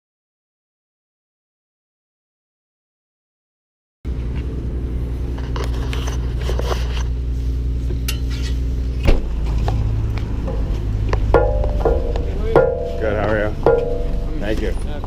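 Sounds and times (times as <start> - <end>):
low hum: 4.1 - 15.0
plucked music: 11.2 - 14.8
sharp knock: 11.4 - 14.3.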